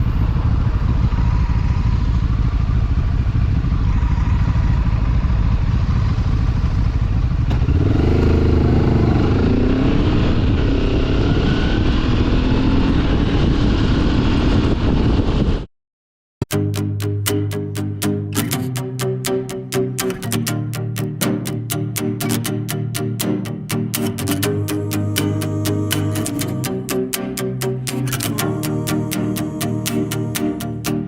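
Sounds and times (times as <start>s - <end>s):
wind rush on microphone: 0.0s - 7.5s, 9.7s - 15.7s
motorcycle engine: 0.0s - 14.8s.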